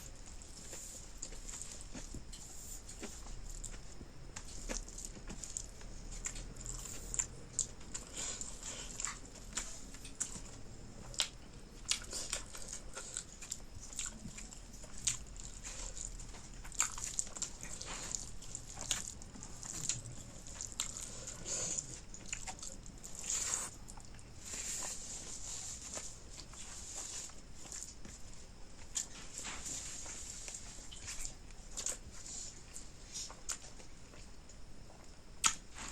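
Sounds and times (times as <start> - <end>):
wet chewing: 0.0 - 35.9
lip smacks: 35.4 - 35.6.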